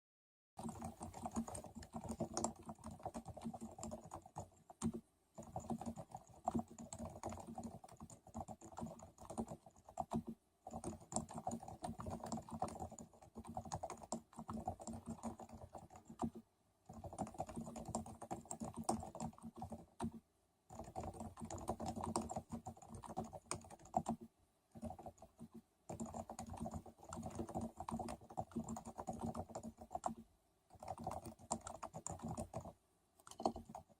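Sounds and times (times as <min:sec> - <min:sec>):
typing on a keyboard: 0:00.6 - 0:33.9.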